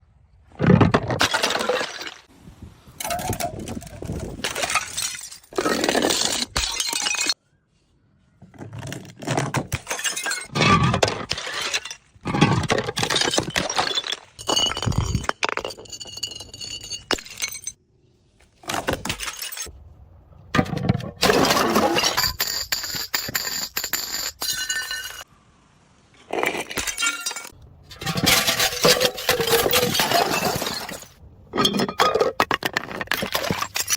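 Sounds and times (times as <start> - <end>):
glass bottles smashing: 4.4 - 7.4, 9.7 - 17.8, 21.2 - 25.3, 26.5 - 32.4.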